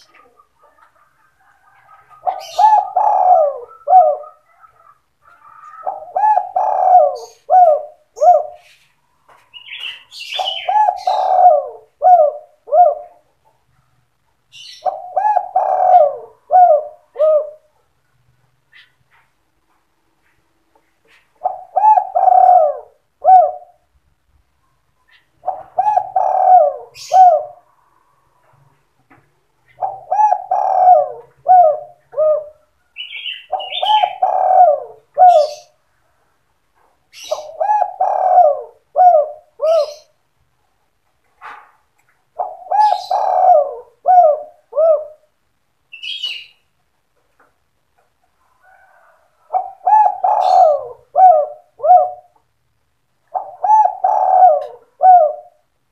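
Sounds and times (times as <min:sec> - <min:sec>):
dove cooing: 0:00.0 - 0:08.8, 0:09.5 - 0:13.4, 0:14.5 - 0:17.8, 0:21.1 - 0:23.9, 0:25.1 - 0:28.7, 0:29.6 - 0:35.8, 0:37.1 - 0:40.2, 0:42.3 - 0:45.4, 0:48.6 - 0:52.4, 0:53.2 - 0:55.7.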